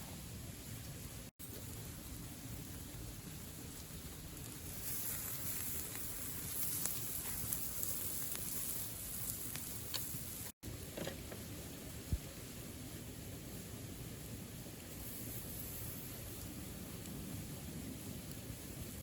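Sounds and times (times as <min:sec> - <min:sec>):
wood fire crackling: 0:00.0 - 0:19.0
sharp pops of fire: 0:00.6 - 0:12.4.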